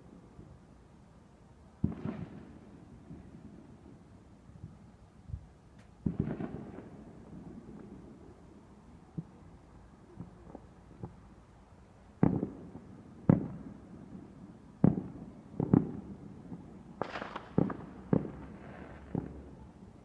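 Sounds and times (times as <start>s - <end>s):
fireworks bangs: 1.8s - 3.4s, 6.0s - 8.2s, 12.2s - 13.8s, 14.8s - 19.6s
fireworks crackling: 12.1s - 19.9s.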